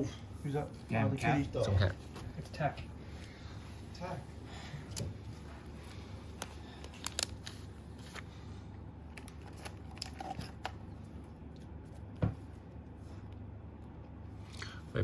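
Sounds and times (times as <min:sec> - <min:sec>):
low steady hum: 0:00.0 - 0:15.0
cards clicking and snapping: 0:06.4 - 0:08.2.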